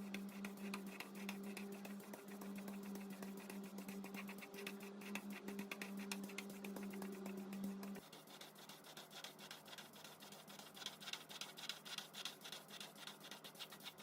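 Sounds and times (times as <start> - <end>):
low motor hum: 0.0 - 8.0
rapid brushing strokes: 0.0 - 14.0.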